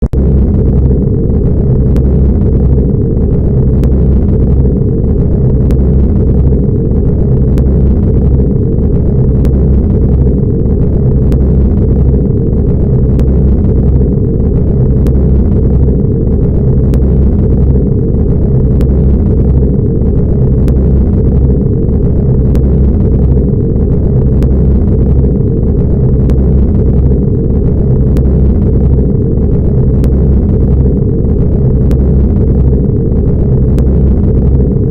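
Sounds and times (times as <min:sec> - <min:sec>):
spaceship engine drone: 0:00.0 - 0:34.9.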